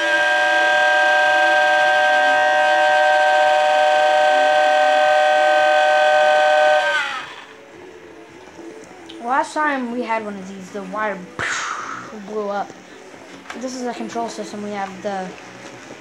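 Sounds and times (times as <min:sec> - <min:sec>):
electronic train horn chord: 0:00.0 - 0:08.2.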